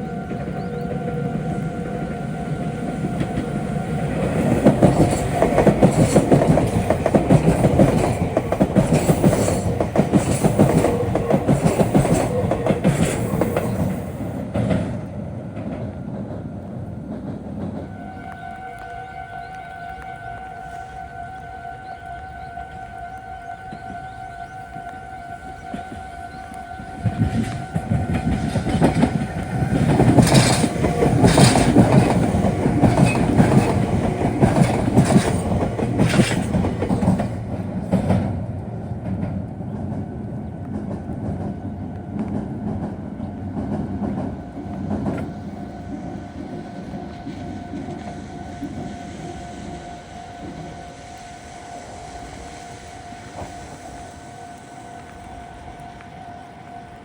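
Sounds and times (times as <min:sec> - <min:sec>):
wheels clacking over rail joints: 0:00.0 - 0:18.8, 0:25.5 - 0:50.9
train rumbling: 0:00.0 - 0:57.0.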